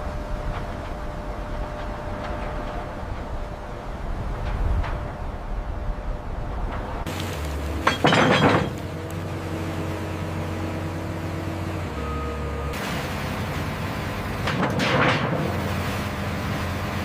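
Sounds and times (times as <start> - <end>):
breaking material crash: 7.1 - 8.9, 12.8 - 15.8.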